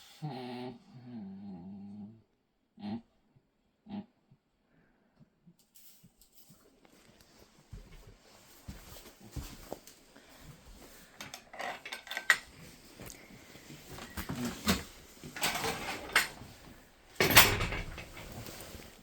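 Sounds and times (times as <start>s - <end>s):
rustling: 5.6s - 19.0s
light clinks and knocks: 11.1s - 12.5s, 14.0s - 16.6s, 17.2s - 18.9s.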